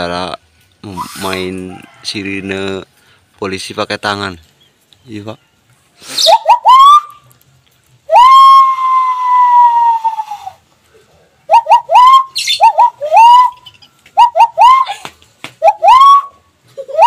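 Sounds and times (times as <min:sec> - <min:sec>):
hand whistle siren imitation: 0:06.3 - 0:07.2, 0:08.1 - 0:10.4, 0:11.5 - 0:15.0, 0:15.6 - 0:16.4.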